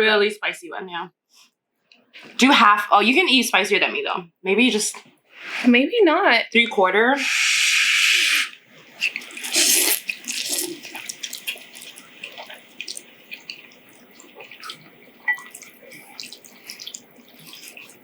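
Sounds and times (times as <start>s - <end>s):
noodles being slurped: 7.5s - 18.0s
wet chewing: 8.2s - 18.0s.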